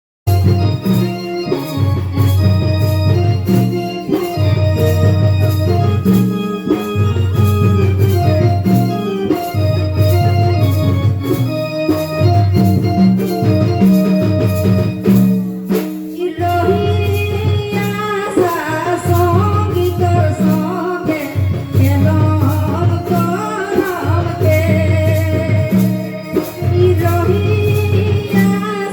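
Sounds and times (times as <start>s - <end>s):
organ-like keyboard melody: 0.3s - 28.9s
steady drum beat: 0.3s - 28.9s
person singing: 16.1s - 28.9s.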